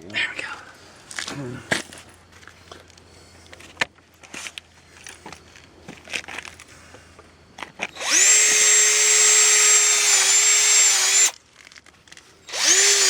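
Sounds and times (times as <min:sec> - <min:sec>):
power drill boring into concrete: 0:07.9 - 0:11.4, 0:12.5 - 0:13.0.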